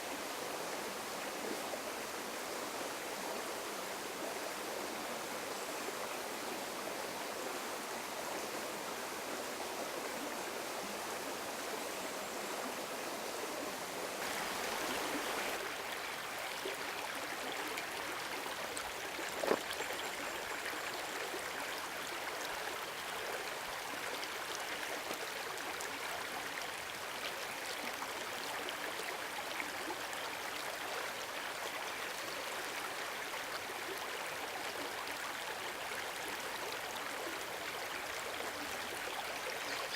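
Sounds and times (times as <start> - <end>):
river water rushing: 14.1 - 27.2.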